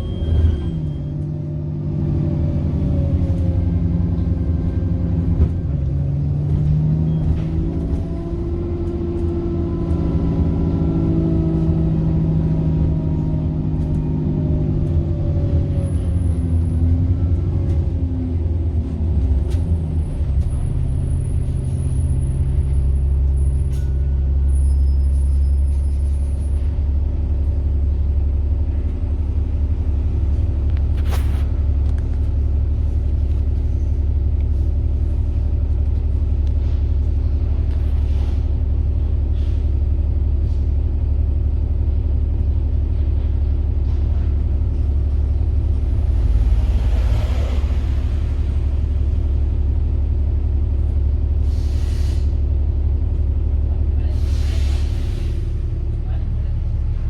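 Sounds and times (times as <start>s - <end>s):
bus engine running: 0.0s - 57.0s.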